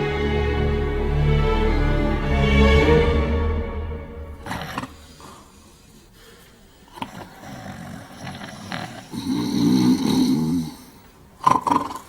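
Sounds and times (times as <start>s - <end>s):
men snoring heavily: 6.9s - 12.0s.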